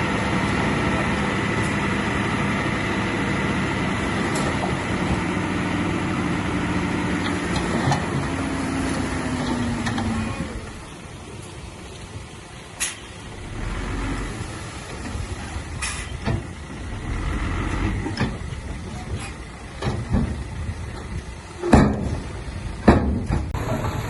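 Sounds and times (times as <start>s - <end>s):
heavy machinery engine rumble: 0.0s - 24.0s
metallic clanks and knocks: 21.6s - 24.0s.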